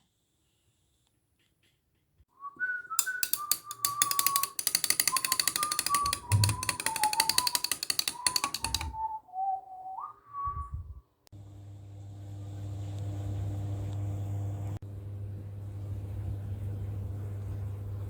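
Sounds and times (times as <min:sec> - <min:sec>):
person whistling a tune: 0:02.3 - 0:11.0
coffee machine pump rattling: 0:03.0 - 0:09.0.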